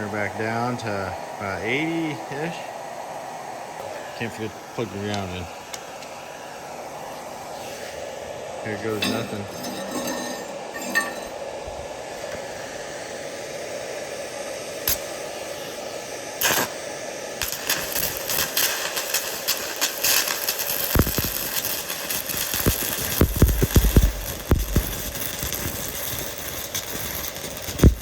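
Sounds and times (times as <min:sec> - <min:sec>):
welding arc crackling and spitting: 0:00.0 - 0:06.3, 0:14.8 - 0:28.0
welder humming: 0:00.0 - 0:28.0.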